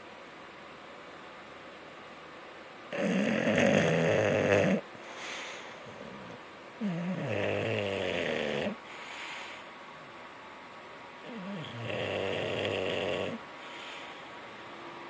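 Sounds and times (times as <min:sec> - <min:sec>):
dog snoring: 0:02.9 - 0:08.8, 0:11.2 - 0:14.0
dog breathing softly: 0:04.7 - 0:07.3, 0:12.6 - 0:14.4.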